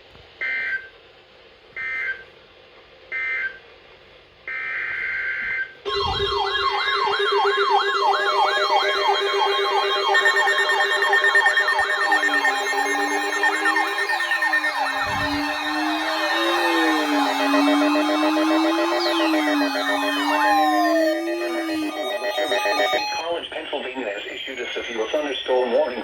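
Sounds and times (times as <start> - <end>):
steady tone: 5.9 - 24.4
electronic sirens sweeping: 5.9 - 25.9
warbling digital data tones: 5.9 - 26.0.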